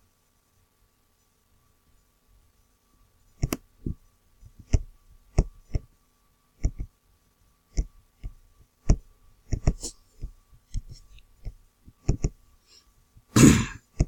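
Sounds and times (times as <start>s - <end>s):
computer mouse clicking: 3.4s - 3.6s, 4.6s - 5.9s, 6.6s - 6.9s, 7.7s - 12.4s.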